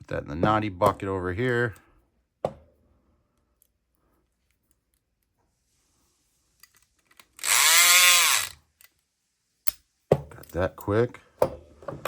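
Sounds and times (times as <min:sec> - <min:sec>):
electric lock pick gun whirring: 0:07.2 - 0:08.6.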